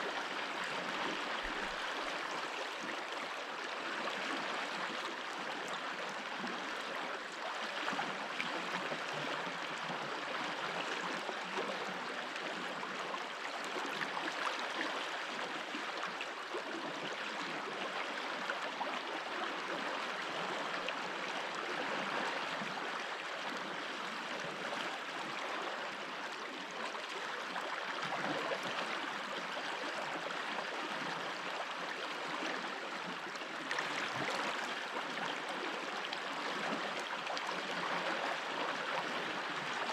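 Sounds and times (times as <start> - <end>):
stream babbling over stones: 18.8 - 39.9.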